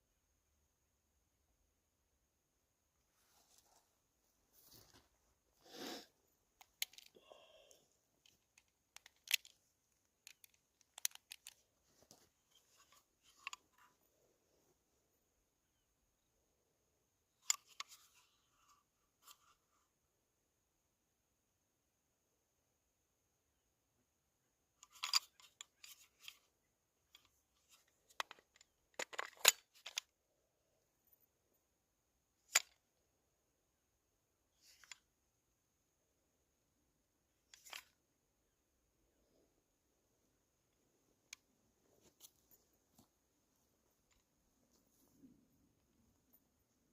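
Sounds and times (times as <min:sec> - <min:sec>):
handling rustling: 0:03.1 - 0:05.4, 0:08.1 - 0:14.8, 0:41.0 - 0:46.9
handgun metallic clicks and rattles: 0:06.6 - 0:07.1, 0:08.2 - 0:11.6.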